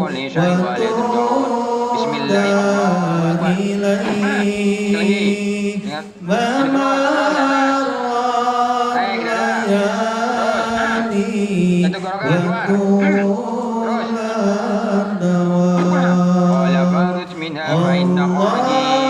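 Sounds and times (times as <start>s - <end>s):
voice chanting in long held notes: 0.0s - 19.0s.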